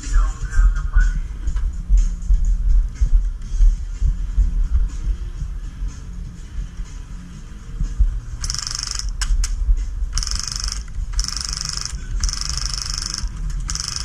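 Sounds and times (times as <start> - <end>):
mini gun firing rapid bursts: 8.4 - 9.4, 10.2 - 14.0
sharp clicks: 8.4 - 14.0.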